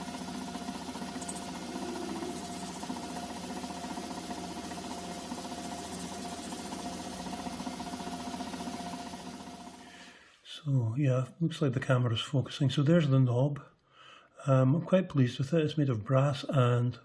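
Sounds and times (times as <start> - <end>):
lathe motor humming: 0.0 - 9.8.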